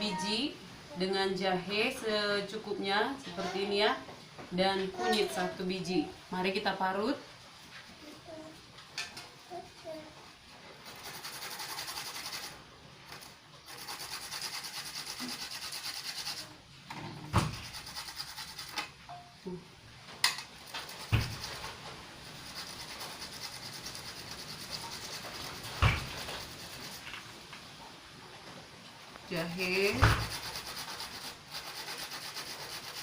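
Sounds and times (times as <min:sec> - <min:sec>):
root rasping on a grater: 0:10.8 - 0:12.5, 0:13.1 - 0:16.5, 0:17.5 - 0:18.8, 0:20.7 - 0:27.1, 0:29.5 - 0:33.0.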